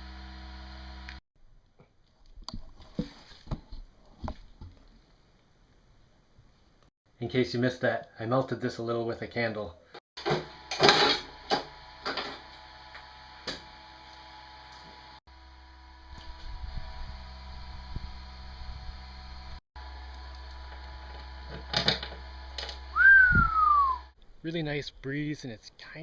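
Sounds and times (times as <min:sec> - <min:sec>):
knocks and clatter of parts: 0:10.2 - 0:12.5, 0:21.1 - 0:22.8.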